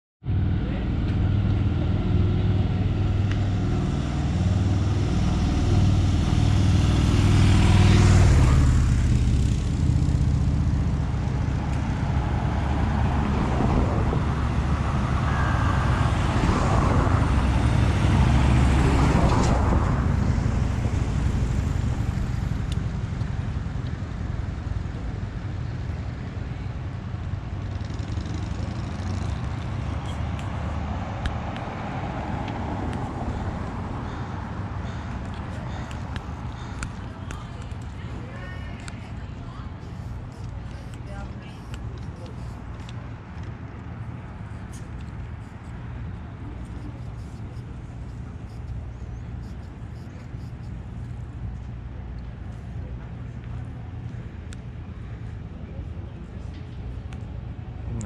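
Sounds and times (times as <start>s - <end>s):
engines running steadily: 0.2s - 58.0s
vehicles passing: 0.2s - 58.0s.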